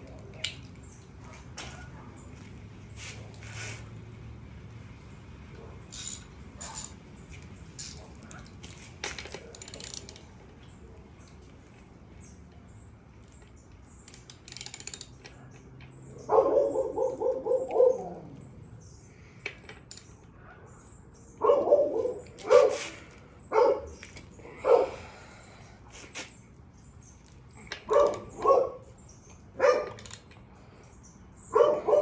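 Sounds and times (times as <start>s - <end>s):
metallic clinks of tools: 5.9s - 7.0s, 7.6s - 10.3s, 14.1s - 15.6s, 19.6s - 20.3s
dog barking: 16.2s - 18.2s, 21.4s - 24.0s, 24.6s - 25.0s, 27.9s - 28.9s, 29.6s - 30.0s, 31.5s - 32.0s.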